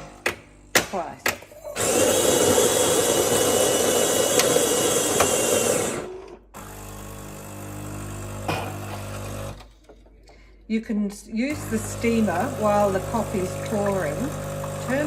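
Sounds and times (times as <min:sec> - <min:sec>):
coffee grinder grinding beans: 0:01.8 - 0:09.6, 0:11.5 - 0:15.0
coffee machine brewing hum: 0:01.8 - 0:09.7, 0:11.5 - 0:15.0.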